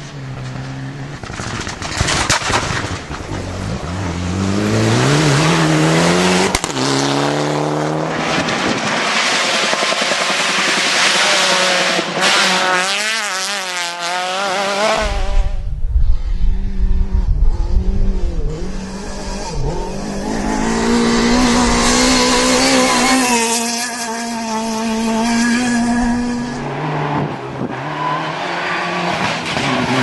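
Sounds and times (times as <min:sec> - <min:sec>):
car engine low rumble: 0:00.0 - 0:06.7, 0:14.8 - 0:23.7, 0:24.4 - 0:27.8
rally car engines at full throttle: 0:00.0 - 0:30.0.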